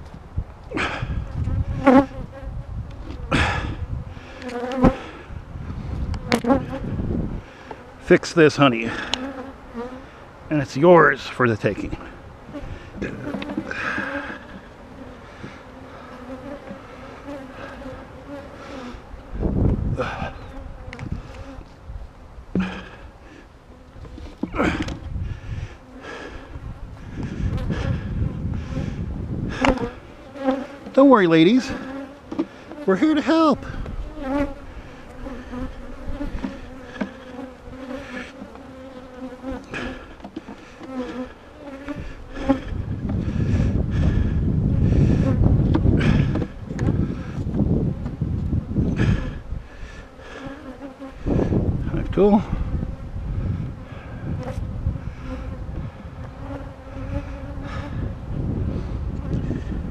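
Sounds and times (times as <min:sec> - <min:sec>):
wind rumbling on microphone: 0:00.0 - 0:07.7, 0:11.7 - 0:15.6, 0:18.9 - 0:23.2, 0:23.9 - 0:30.8, 0:33.6 - 0:38.3, 0:41.8 - 0:59.9
honeybees buzzing: 0:00.8 - 0:59.9.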